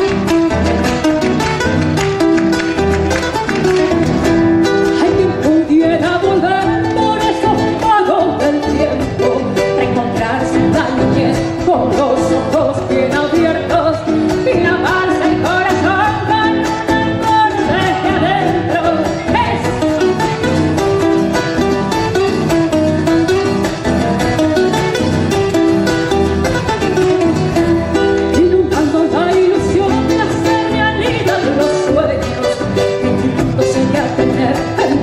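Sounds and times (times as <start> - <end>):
plucked guitar lead melody: 0.0 - 35.0
strummed acoustic guitars: 0.0 - 35.0.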